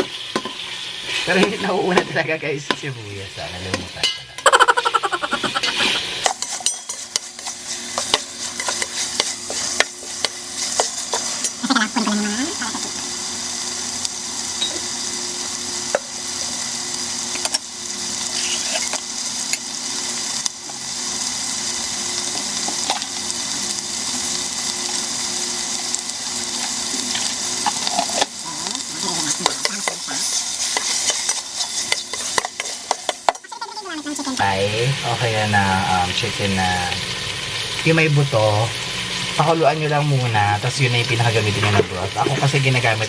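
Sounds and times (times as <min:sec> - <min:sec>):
food sizzling in oil: 0:00.0 - 0:43.0
spatula scraping pan: 0:04.8 - 0:13.0, 0:18.2 - 0:19.0, 0:26.6 - 0:34.4.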